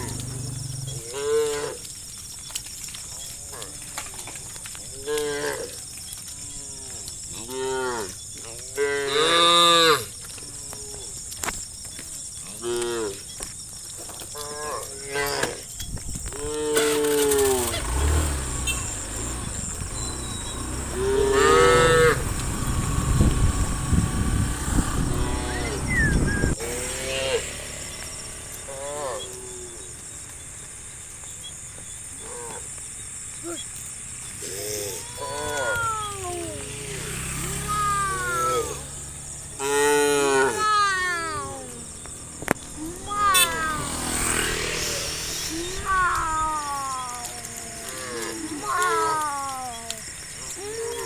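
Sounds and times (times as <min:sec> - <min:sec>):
low rumbling noise: 0:19.1 - 0:27.0
cattle mooing: 0:20.4 - 0:22.6, 0:39.6 - 0:41.3.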